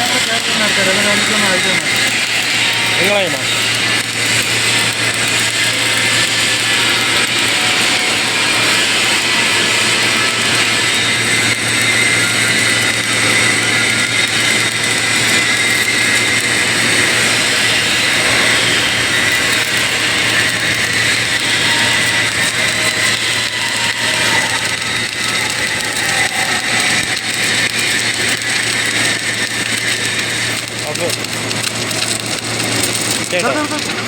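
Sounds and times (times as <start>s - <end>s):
low machine hum: 0.0s - 34.0s
welding machine hiss: 0.0s - 34.0s.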